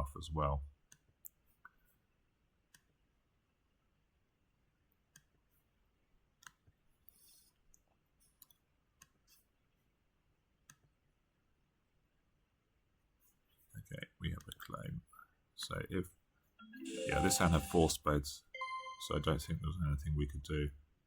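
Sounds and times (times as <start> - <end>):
faint computer mouse clicks: 6.4 - 9.4.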